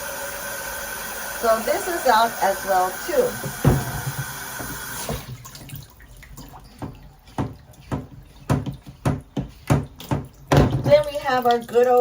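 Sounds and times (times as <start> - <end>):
water spraying from shower head: 0.0 - 5.2
knocks and clunks of fittings: 3.4 - 5.3, 6.7 - 11.1.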